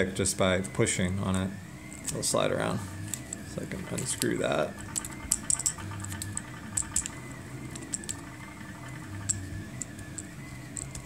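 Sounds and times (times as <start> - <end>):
metal pick clicking and scraping: 3.1 - 8.2.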